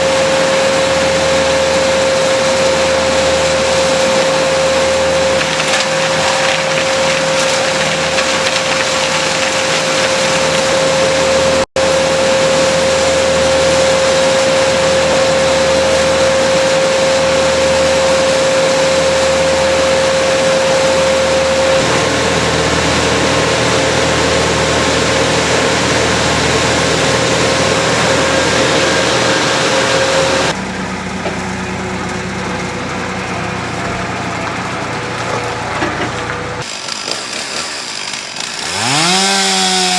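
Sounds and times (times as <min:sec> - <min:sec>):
small engine whining at high speed: 0:00.0 - 0:39.9
quieter engine sound: 0:21.8 - 0:36.6.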